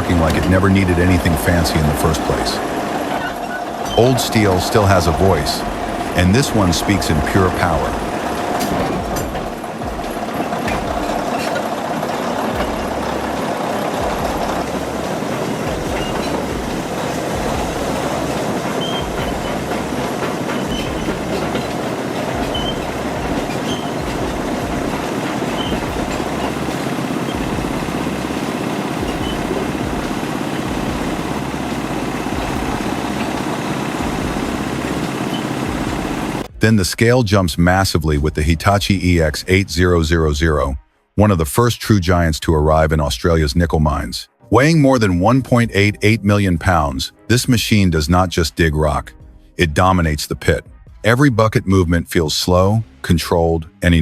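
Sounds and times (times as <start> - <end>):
bulldozer diesel engine: 0.0 - 36.8
steel tracks clanking: 0.0 - 36.8.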